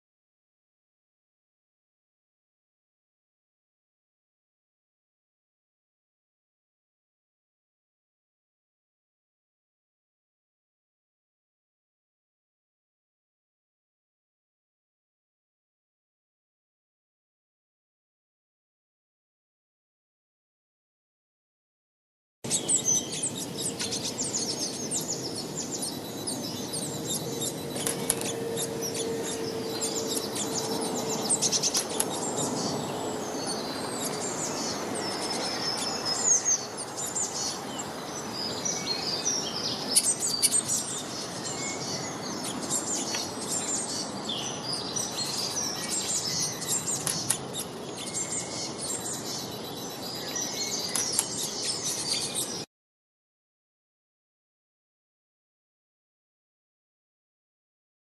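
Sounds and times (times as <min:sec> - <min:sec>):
steady outdoor hiss: 0:22.5 - 0:52.6
small birds chirping and trilling: 0:22.5 - 0:52.7.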